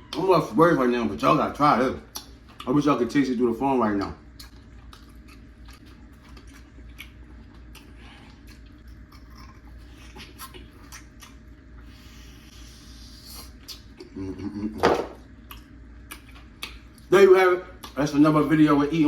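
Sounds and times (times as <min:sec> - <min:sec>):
low steady hum: 0:00.0 - 0:19.0
person chewing: 0:02.0 - 0:02.8, 0:04.3 - 0:17.1, 0:17.7 - 0:18.0
wet smacks and mouth clicks: 0:02.1 - 0:02.7, 0:04.3 - 0:11.5, 0:13.4 - 0:14.2, 0:15.4 - 0:17.1, 0:17.8 - 0:18.0.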